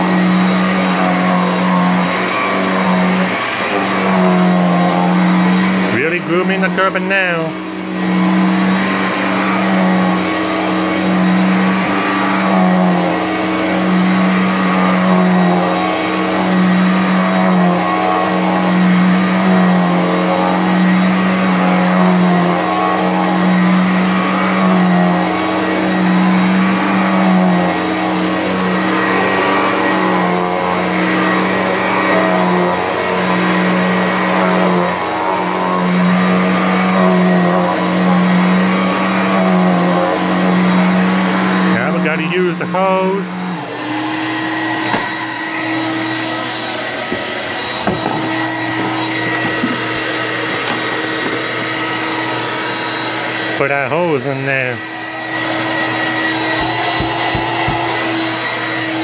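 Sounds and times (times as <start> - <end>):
vacuum cleaner humming: 0.0 - 59.0.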